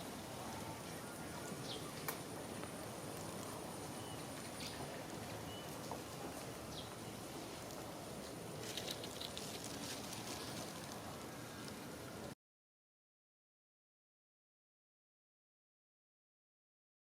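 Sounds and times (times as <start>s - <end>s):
outdoor background hiss: 0.0s - 12.4s
patter of clicks: 7.6s - 11.8s.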